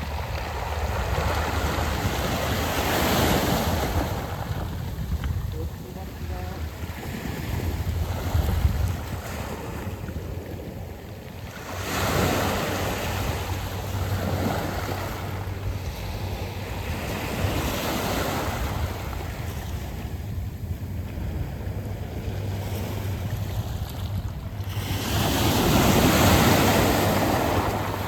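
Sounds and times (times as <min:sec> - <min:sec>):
waves washing on pebbles: 0:00.0 - 0:10.7, 0:22.4 - 0:28.0.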